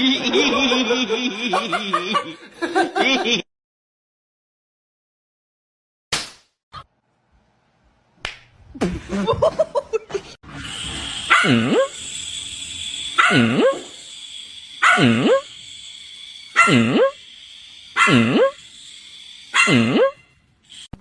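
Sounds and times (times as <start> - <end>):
steady hiss: 10.8 - 19.6
dog barking: 11.3 - 11.9, 13.2 - 13.9, 14.8 - 15.4, 16.6 - 17.1, 18.0 - 18.5, 19.5 - 20.1
dog yelping: 11.3 - 11.9, 13.2 - 13.9, 14.8 - 15.4, 16.5 - 17.1, 18.0 - 18.6, 19.5 - 20.2.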